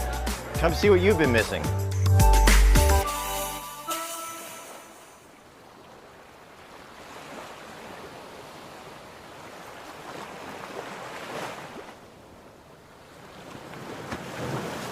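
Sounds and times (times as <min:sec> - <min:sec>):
surf washing onto a beach: 0:13.1 - 0:14.9.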